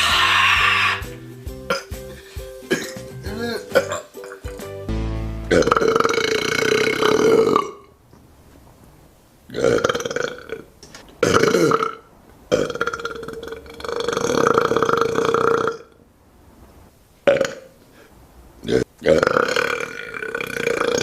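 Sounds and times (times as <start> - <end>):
person belching: 1.7 - 2.0, 2.7 - 4.5, 5.5 - 7.9, 9.5 - 15.9, 17.3 - 17.7, 18.6 - 21.0.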